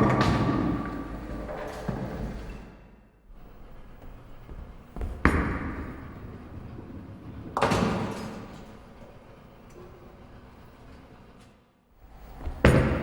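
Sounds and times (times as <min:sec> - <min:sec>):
bowling pins crashing: 0:00.0 - 0:02.6, 0:04.8 - 0:09.0
low bowling rumble: 0:00.0 - 0:11.2.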